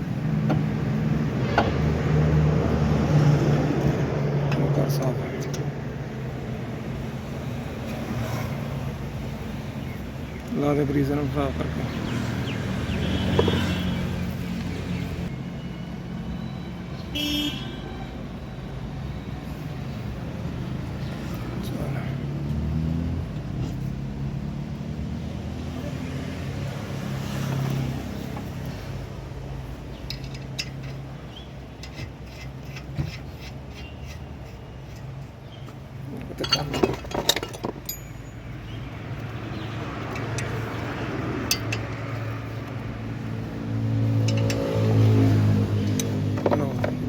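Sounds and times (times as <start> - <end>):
metal tools clinking and scraping: 30.0 - 38.8, 40.0 - 43.2, 44.0 - 45.2, 45.8 - 47.0.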